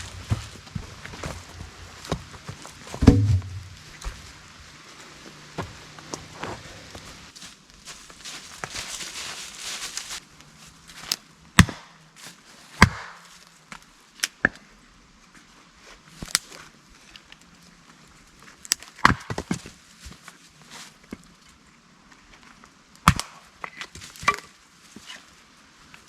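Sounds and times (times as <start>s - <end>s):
blade chopping wood: 3.0s - 3.9s, 12.8s - 13.2s.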